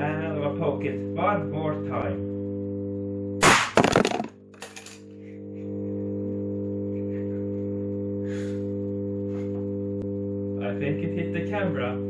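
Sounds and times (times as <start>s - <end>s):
high-voltage discharge bang: 3.4s - 4.3s.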